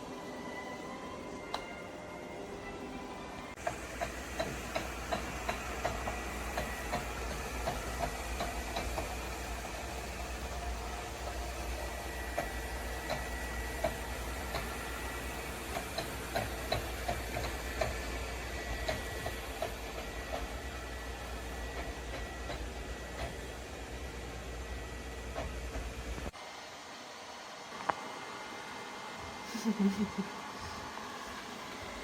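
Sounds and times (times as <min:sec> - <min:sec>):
robot vacuum motor and fan hiss: 0:03.2 - 0:32.0.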